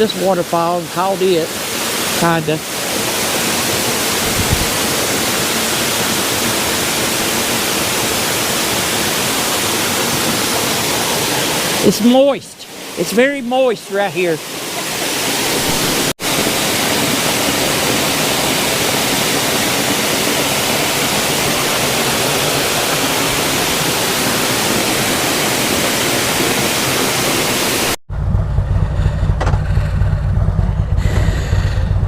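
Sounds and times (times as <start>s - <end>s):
waterfall rushing: 0.0s - 28.0s
motorcycle engine rumbling: 28.1s - 32.0s.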